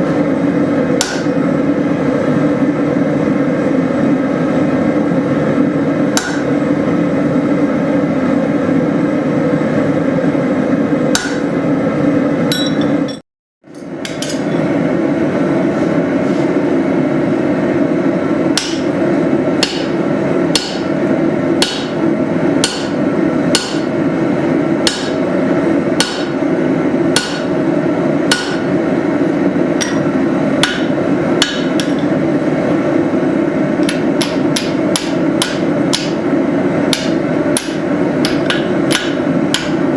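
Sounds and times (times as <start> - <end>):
hammer striking steel on anvil: 1.0 - 1.4, 6.1 - 6.6, 11.1 - 11.5, 12.5 - 14.6, 18.6 - 18.9, 19.6 - 20.9, 21.6 - 22.0, 22.6 - 23.9, 24.8 - 25.2, 26.0 - 26.4, 27.2 - 27.5, 28.3 - 28.7, 29.8 - 32.1, 33.8 - 36.2, 36.9 - 39.8.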